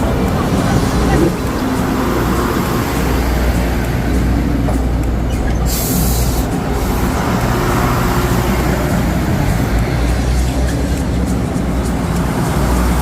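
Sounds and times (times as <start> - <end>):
large vehicle rumbling: 0.0 - 13.0
air hiss: 5.5 - 7.3.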